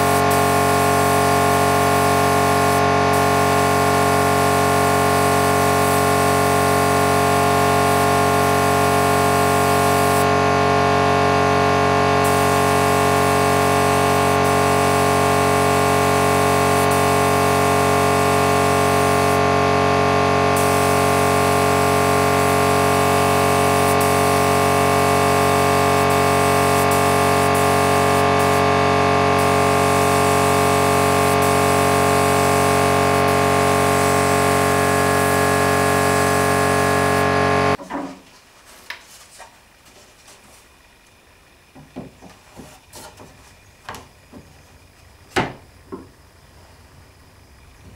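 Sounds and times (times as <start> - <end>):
machine humming: 0.0 - 37.8.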